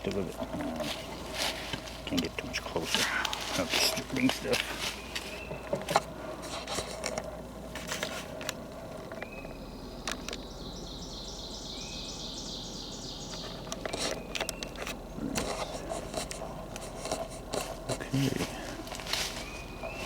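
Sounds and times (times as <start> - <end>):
twigs cracking: 0.0 - 9.4, 13.3 - 20.0
footsteps in forest litter: 0.1 - 5.6, 15.4 - 20.0
high bird chirps: 9.2 - 14.8, 19.3 - 20.0.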